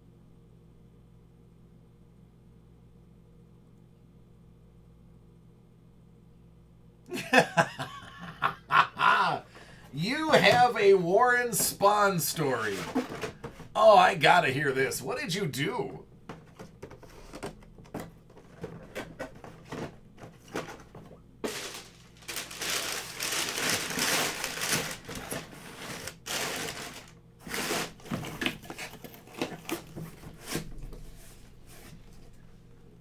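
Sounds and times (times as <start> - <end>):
packaging rustling: 9.5 - 13.8, 16.3 - 32.0.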